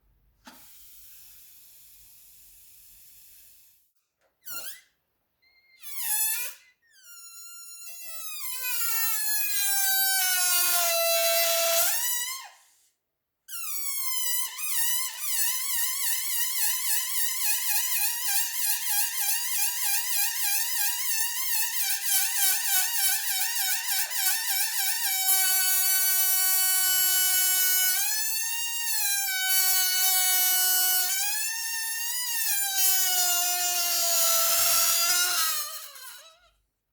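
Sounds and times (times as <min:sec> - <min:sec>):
air squealing out of balloon: 0:04.4 - 0:10.5, 0:31.0 - 0:36.6.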